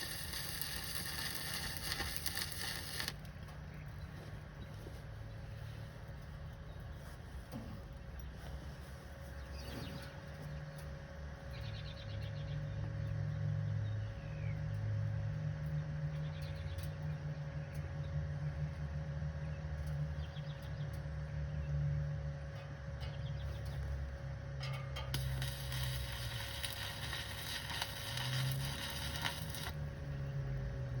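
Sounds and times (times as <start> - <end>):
steady low rumble: 0.0 - 12.0, 23.4 - 31.0.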